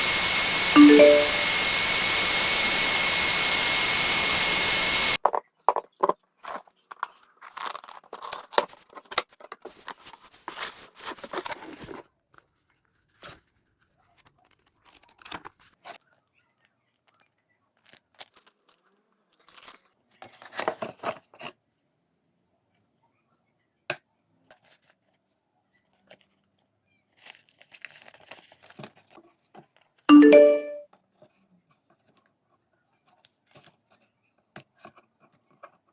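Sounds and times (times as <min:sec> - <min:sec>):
loud steady hiss: 0:00.0 - 0:05.2
short loud pitched buzz: 0:00.0 - 0:05.2
packaging crinkling and tearing: 0:07.4 - 0:09.1.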